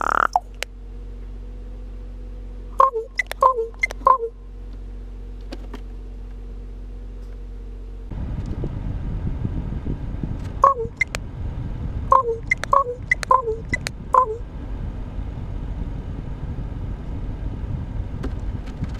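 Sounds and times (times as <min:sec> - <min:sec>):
raven calling: 0:00.0 - 0:00.5
steady low rumble: 0:06.0 - 0:18.9.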